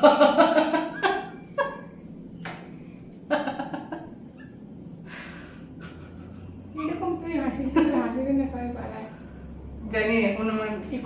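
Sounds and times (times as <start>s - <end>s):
woman laughing loudly: 0.0s - 1.9s.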